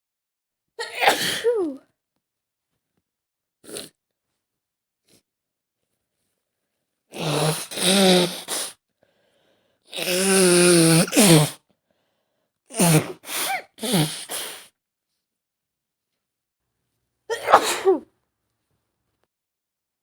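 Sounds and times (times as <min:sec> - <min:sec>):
woman sneezing: 0:00.8 - 0:01.8, 0:17.3 - 0:18.1.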